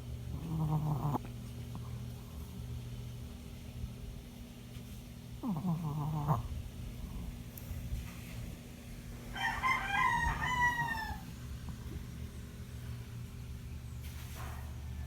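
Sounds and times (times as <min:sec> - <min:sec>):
rooster crowing: 0:09.3 - 0:11.3.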